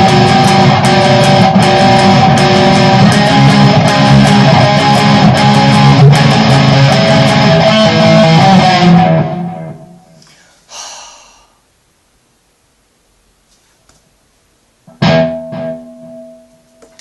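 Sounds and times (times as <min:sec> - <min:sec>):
guitar plucked and strummed: 0:00.0 - 0:10.2, 0:14.9 - 0:17.0.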